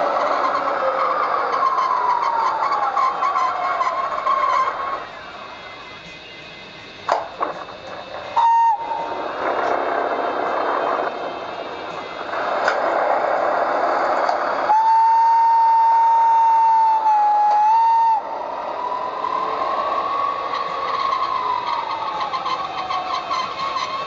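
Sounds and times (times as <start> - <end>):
electric hum and hiss: 0.0 - 24.0
electric motor whine: 0.0 - 24.0
locomotive horn blast: 8.3 - 9.2.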